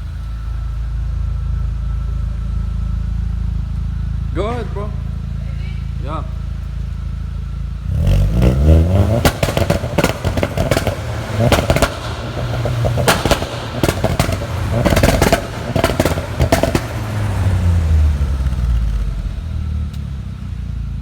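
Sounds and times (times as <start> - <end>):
car engine revving: 0.0 - 21.0
exhaust popping and banging: 7.8 - 20.2.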